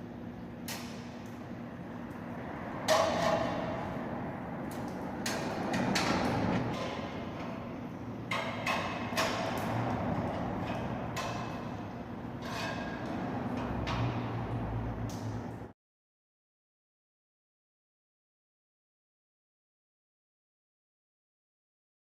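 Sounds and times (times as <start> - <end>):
steady background noise: 0.0 - 15.8.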